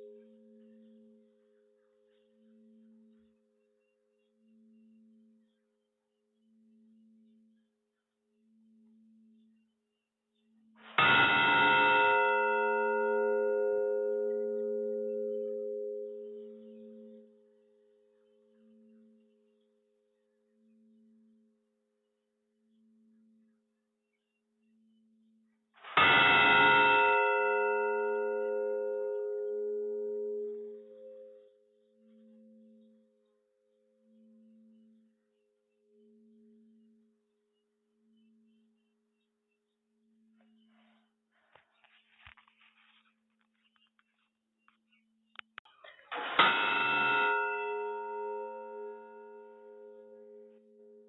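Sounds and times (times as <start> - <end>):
meditation bell hum: 11.3 - 19.4, 26.3 - 36.8, 46.6 - 51.0
bell ringing with overtones: 46.4 - 50.7.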